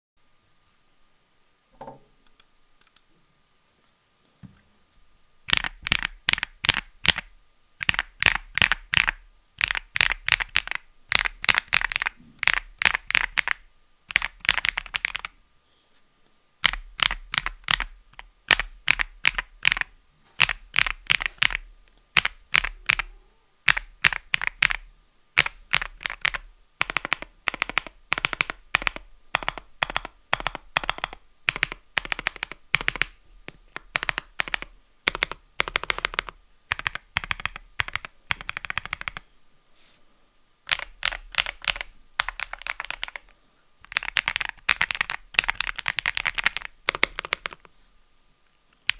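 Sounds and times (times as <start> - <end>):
mechanical keyboard typing: 5.5 - 15.3, 16.6 - 23.1, 23.7 - 39.2, 40.7 - 47.7.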